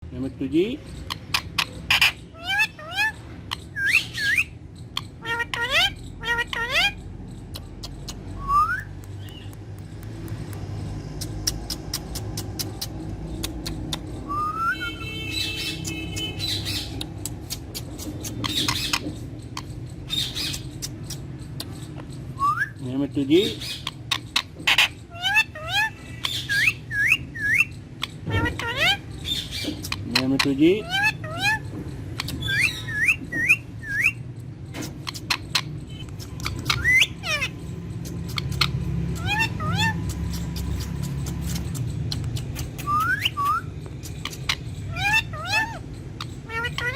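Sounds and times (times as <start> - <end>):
squeaky parakeet call: 0.8 - 9.5, 11.6 - 22.8, 23.4 - 46.9
parrot squawking: 0.9 - 9.6, 11.2 - 22.8, 23.4 - 46.9
parakeet whistling: 1.0 - 7.1, 7.9 - 9.5, 14.2 - 21.0, 21.6 - 22.8, 23.6 - 30.1, 30.8 - 46.9
sharp clicks: 7.3 - 14.2, 40.0 - 44.7.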